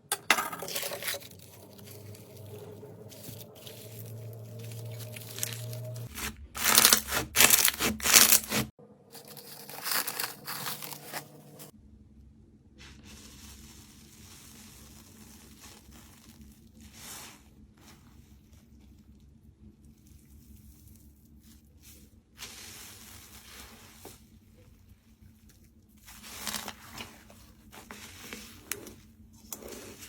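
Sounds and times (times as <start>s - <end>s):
slime crackling and tearing: 1.0s - 11.7s.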